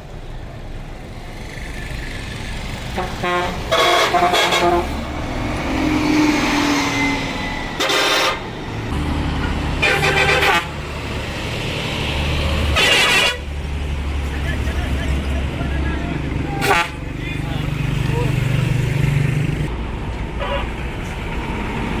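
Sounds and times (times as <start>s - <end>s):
bus engine running: 0.0s - 22.0s
bus horn blasts: 2.9s - 5.0s, 7.8s - 8.5s, 9.8s - 10.9s, 12.8s - 13.5s, 16.5s - 17.0s.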